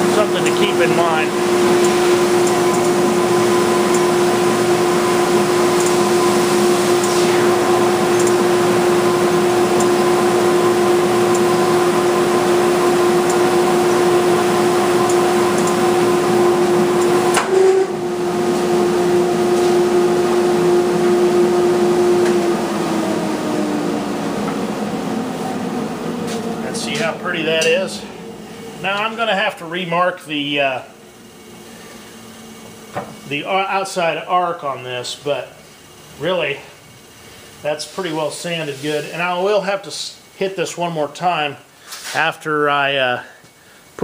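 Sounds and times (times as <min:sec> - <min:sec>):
belt sander humming: 0:00.0 - 0:39.6
sharp click: 0:08.2 - 0:08.4.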